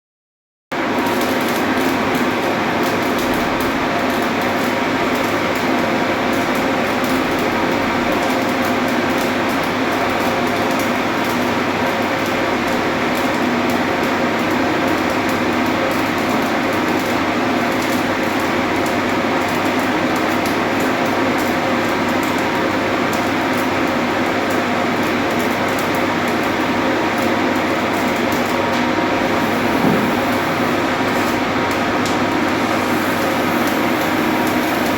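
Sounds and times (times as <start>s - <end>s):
arc welding crackle: 0.8s - 34.9s
machinery hum: 28.5s - 34.9s.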